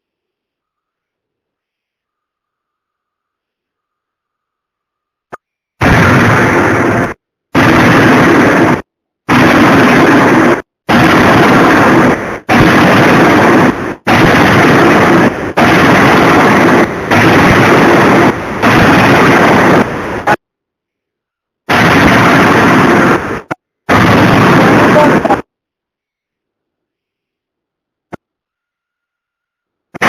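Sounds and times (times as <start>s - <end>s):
distorted machinery roar: 5.8s - 20.4s, 21.7s - 25.5s.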